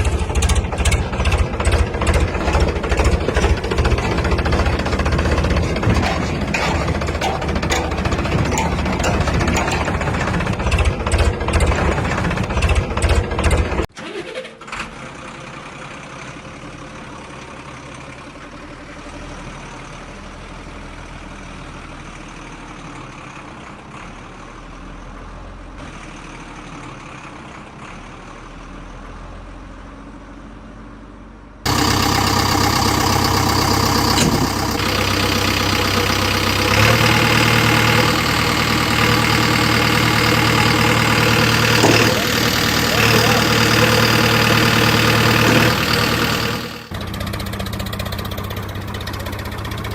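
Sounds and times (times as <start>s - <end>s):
diesel engine idling: 0.0s - 13.9s, 30.4s - 49.9s
diesel engine knocking: 0.0s - 13.9s, 31.7s - 49.9s
diesel engine running: 0.0s - 14.2s, 14.9s - 49.9s.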